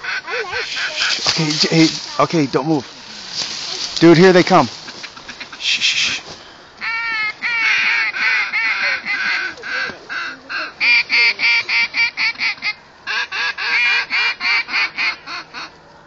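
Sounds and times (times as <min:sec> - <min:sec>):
duck call quacks: 0:00.0 - 0:01.5, 0:04.9 - 0:15.7.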